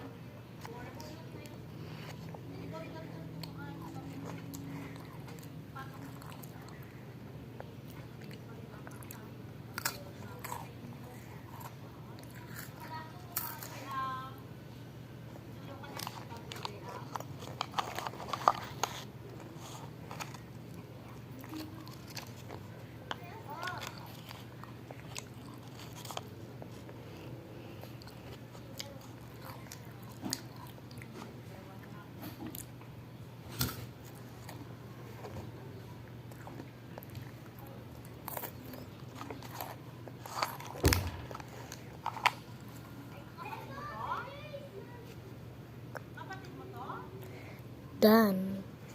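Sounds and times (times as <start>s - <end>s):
quiet chewing: 0.4s - 43.9s, 44.9s - 47.7s
person chewing and biting: 23.8s - 31.1s.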